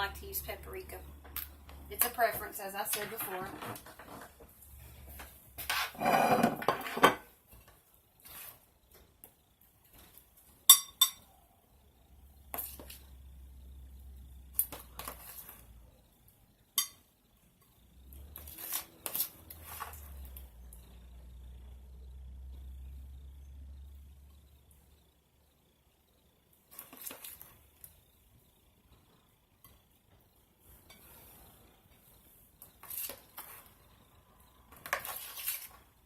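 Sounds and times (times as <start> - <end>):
utensils clinking against a dish: 10.7 - 11.3, 16.8 - 17.0.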